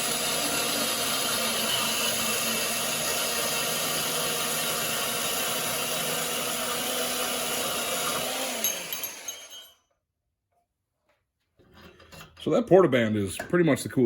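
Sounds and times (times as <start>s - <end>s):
band saw cutting steel tube: 0.0s - 9.7s.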